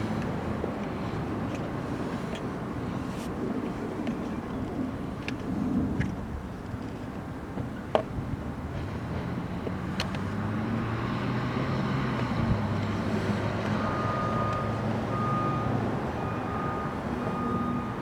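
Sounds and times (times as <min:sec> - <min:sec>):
vehicle engine drone: 0:00.0 - 0:04.1, 0:07.8 - 0:18.0.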